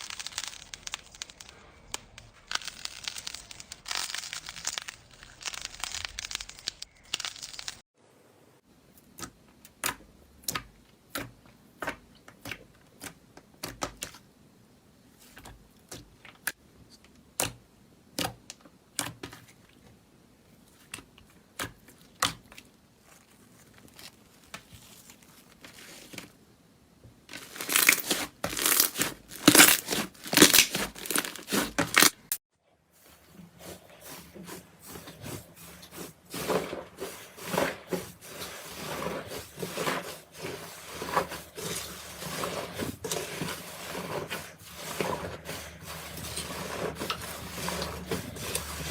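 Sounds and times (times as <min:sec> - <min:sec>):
slime crackling: 0:00.0 - 0:07.8, 0:27.3 - 0:32.3.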